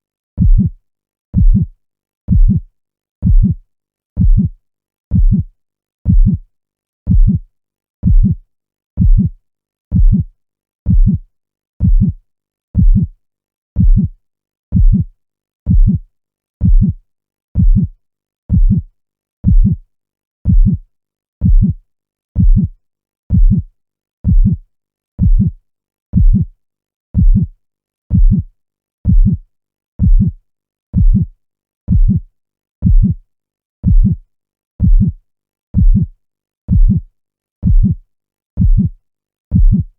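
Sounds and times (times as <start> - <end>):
heartbeat double thump: 0.4 - 0.7, 1.4 - 1.7, 2.3 - 2.6, 3.2 - 3.6, 4.2 - 4.5, 5.1 - 5.5, 6.1 - 6.4, 7.1 - 7.4, 8.0 - 8.4, 9.0 - 9.3, 9.9 - 10.3, 10.9 - 11.2, 11.8 - 12.2, 12.8 - 13.1, 13.8 - 14.1, 14.7 - 15.1, 15.7 - 16.0, 16.6 - 16.9, 17.6 - 17.9, 18.5 - 18.8, 19.5 - 19.8, 20.5 - 20.8, 21.4 - 21.8, 22.4 - 22.7, 23.3 - 23.6, 24.3 - 24.6, 25.2 - 25.5, 26.2 - 26.4, 27.2 - 27.5, 28.1 - 28.4, 29.1 - 29.4, 30.0 - 30.3, 31.0 - 31.3, 31.9 - 32.2, 32.8 - 33.2, 33.8 - 34.2, 34.8 - 35.1, 35.8 - 36.1, 36.7 - 37.0, 37.6 - 38.0, 38.6 - 38.9, 39.5 - 39.9.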